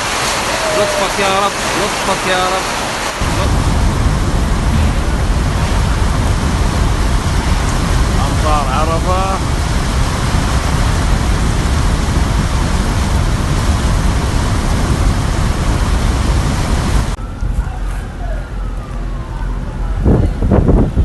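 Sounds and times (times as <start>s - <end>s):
heavy rain pouring: 0.0s - 17.8s
wind buffeting microphone: 2.8s - 21.0s
faint wailing siren: 17.0s - 20.6s.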